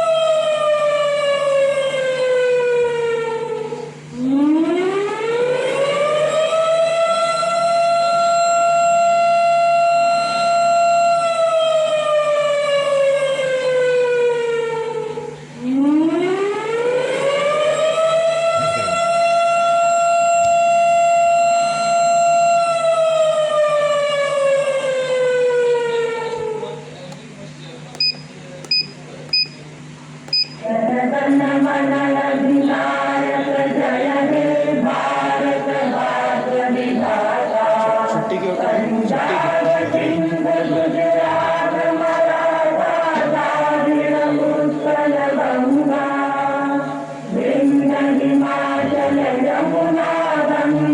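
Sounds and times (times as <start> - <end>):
siren wailing: 0.0 - 15.2, 15.8 - 26.6.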